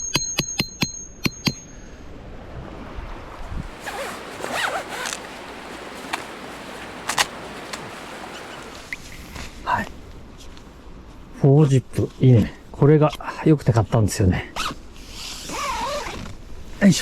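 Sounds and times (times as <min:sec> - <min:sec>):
sharp metallic knocks: 0:00.0 - 0:01.9
zipper rasping: 0:03.7 - 0:07.3, 0:14.6 - 0:16.4.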